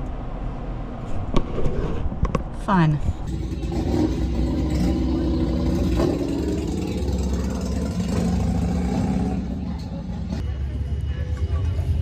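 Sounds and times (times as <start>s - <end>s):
vehicle engines idling: 3.2s - 12.0s.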